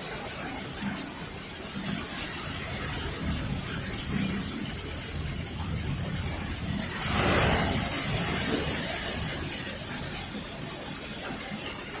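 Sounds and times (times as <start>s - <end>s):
rumbling wind: 0.0s - 11.6s
waves breaking: 0.0s - 12.0s.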